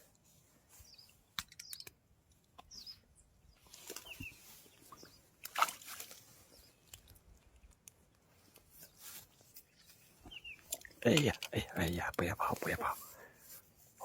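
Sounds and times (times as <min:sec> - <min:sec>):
fish flapping and splashing: 0:05.4 - 0:06.3.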